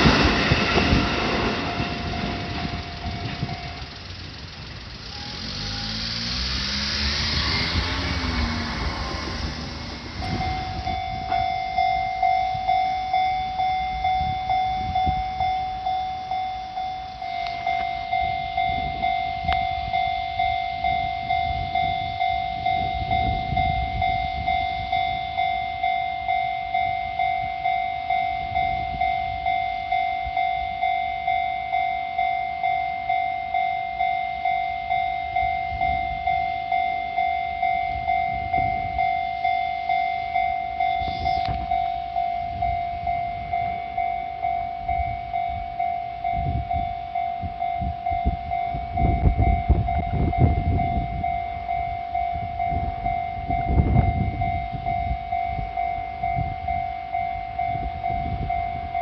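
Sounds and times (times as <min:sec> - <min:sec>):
low rumble: 0:00.0 - 0:25.8
level crossing warning alarm: 0:00.0 - 0:59.0.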